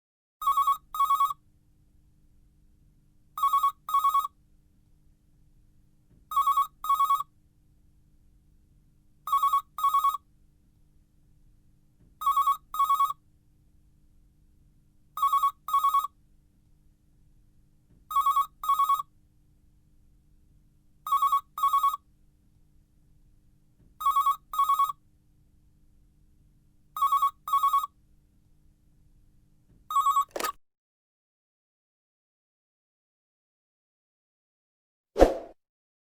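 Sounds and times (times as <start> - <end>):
telephone double ring: 29.9 - 30.6.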